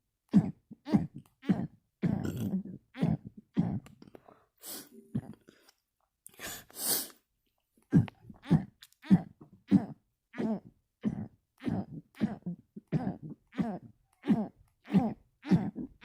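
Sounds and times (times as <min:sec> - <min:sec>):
person burping: 0:00.4 - 0:03.8
sharp breaths in: 0:04.2 - 0:05.7, 0:06.3 - 0:07.2.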